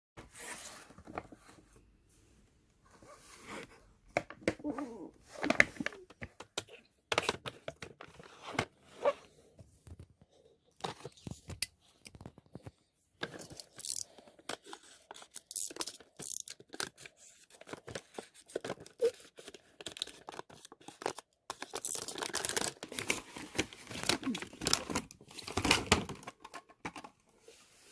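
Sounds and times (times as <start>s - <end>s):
packaging tearing and crinkling: 18.4s - 26.2s.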